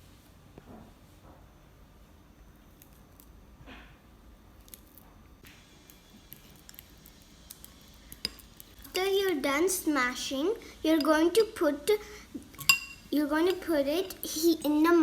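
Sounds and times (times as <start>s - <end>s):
banana squishing under fork: 5.8s - 9.4s.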